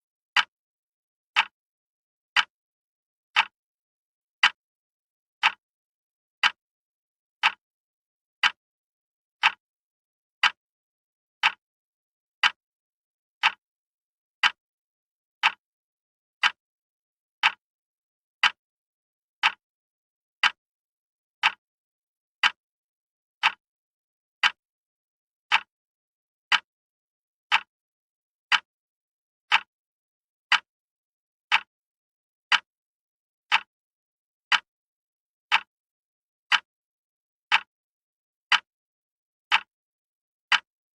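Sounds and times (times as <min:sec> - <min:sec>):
wall clock ticking: 0:00.3 - 0:00.5, 0:01.3 - 0:01.6, 0:03.4 - 0:03.6, 0:04.4 - 0:04.6, 0:05.4 - 0:05.6, 0:06.4 - 0:06.6, 0:07.4 - 0:07.6, 0:17.4 - 0:17.6, 0:19.4 - 0:19.6, 0:21.4 - 0:21.6, 0:23.4 - 0:23.6, 0:25.4 - 0:25.7, 0:26.5 - 0:26.7, 0:27.5 - 0:27.7, 0:28.5 - 0:28.7, 0:29.5 - 0:29.7, 0:30.5 - 0:30.7, 0:31.5 - 0:31.7, 0:32.5 - 0:32.7, 0:33.5 - 0:33.7, 0:34.5 - 0:34.7, 0:35.5 - 0:35.7, 0:37.5 - 0:37.7, 0:39.5 - 0:39.7, 0:40.5 - 0:40.7.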